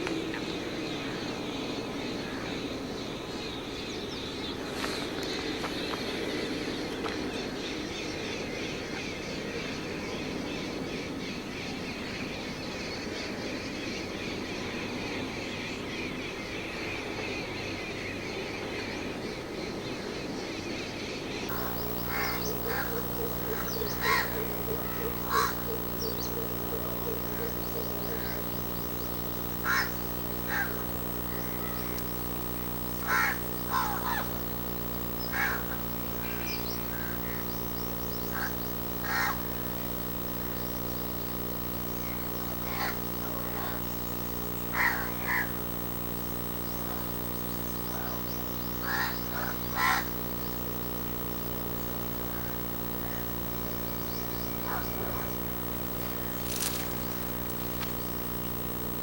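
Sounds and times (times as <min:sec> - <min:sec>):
birds harsh calls: 0:21.5 - 0:40.3, 0:41.5 - 0:51.3
steady low hum: 0:21.5 - 0:59.0.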